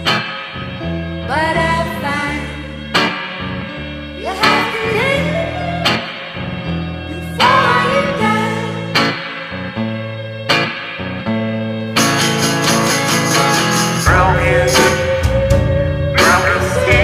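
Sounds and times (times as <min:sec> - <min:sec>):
song with guitar and bass: 0:00.0 - 0:17.0
sharp beat: 0:12.0 - 0:17.0.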